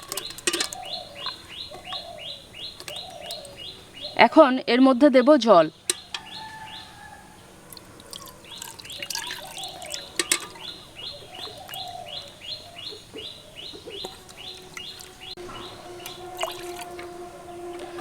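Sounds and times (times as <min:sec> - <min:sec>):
clinks: 0:00.0 - 0:02.1, 0:07.7 - 0:10.8
bird chirping rapidly: 0:00.0 - 0:07.6, 0:08.2 - 0:17.8
water poured into a bucket: 0:07.7 - 0:10.7, 0:16.4 - 0:17.0.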